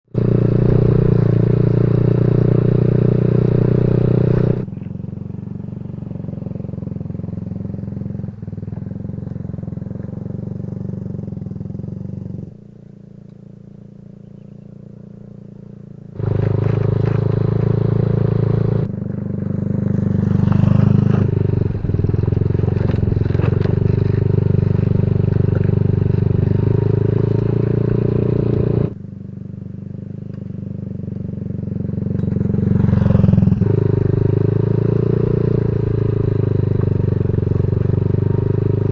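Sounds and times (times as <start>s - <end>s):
motorcycle engine running: 0.1s - 38.9s.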